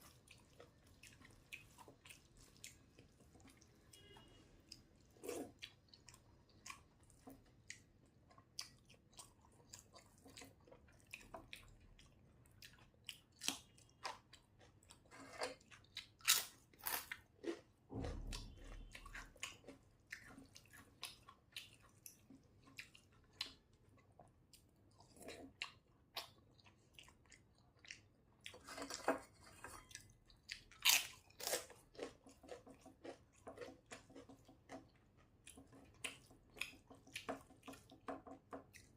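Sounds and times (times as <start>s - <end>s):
chewing and crunching: 0.0s - 38.9s
dull low bump: 17.9s - 19.1s.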